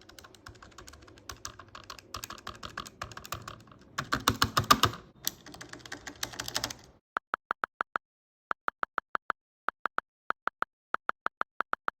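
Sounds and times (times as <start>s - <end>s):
calculator keys pressed: 0.0s - 6.9s.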